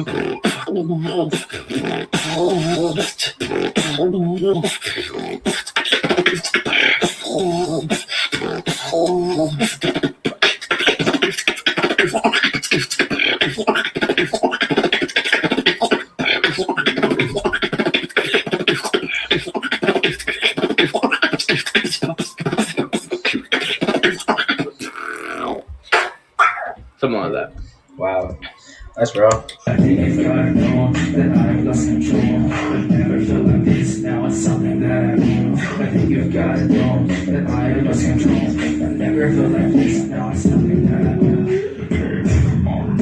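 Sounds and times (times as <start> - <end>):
beatboxing mouth percussion: 0.0 - 43.0
wavering pitched vocal tones: 0.0 - 43.0.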